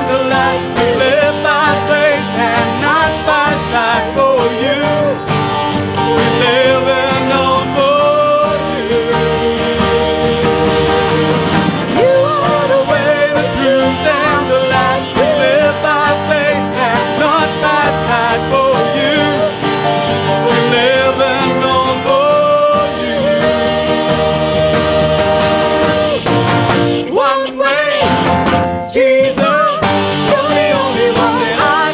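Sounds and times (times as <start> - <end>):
band playing worship song: 0.0 - 31.9.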